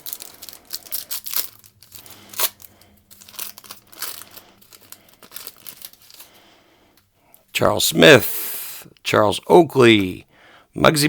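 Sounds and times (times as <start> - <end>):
wax paper wrapper crinkling and tearing: 0.0 - 6.4.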